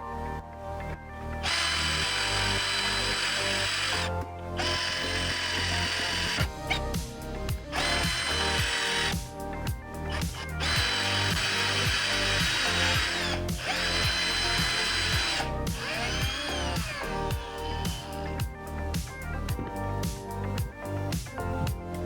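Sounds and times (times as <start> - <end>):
cordless drill drilling metal: 1.4 - 7.0, 7.6 - 9.3, 10.1 - 18.2
drill bit clicks: 1.4 - 7.0, 7.7 - 9.2, 10.1 - 18.2.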